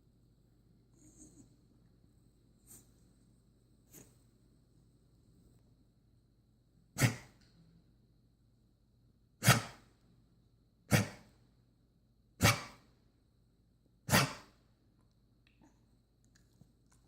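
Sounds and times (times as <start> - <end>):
dog reverse coughing: 7.0 - 7.4, 9.4 - 9.8, 10.9 - 11.3, 12.4 - 12.8, 14.1 - 14.5.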